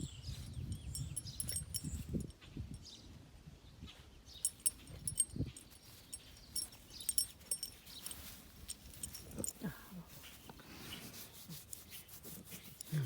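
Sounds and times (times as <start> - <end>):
dog moving with clicks and rustles: 4.4 - 9.6.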